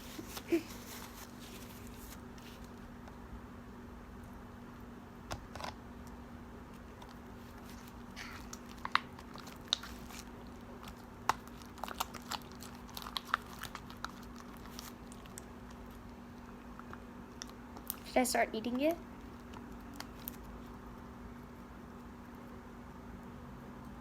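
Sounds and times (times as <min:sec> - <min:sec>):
faint steady hum: 0:00.0 - 0:24.0
slime squelching and clicking: 0:08.2 - 0:16.1.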